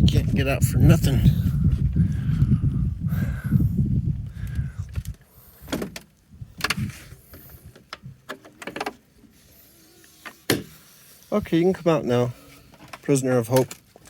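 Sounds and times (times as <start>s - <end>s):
low rumbling handling noise: 0.0s - 9.6s.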